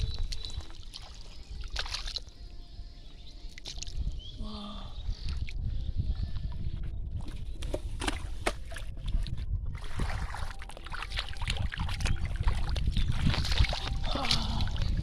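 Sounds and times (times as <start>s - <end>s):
water splashing and sloshing: 0.0s - 2.6s, 3.4s - 4.2s, 7.2s - 15.0s.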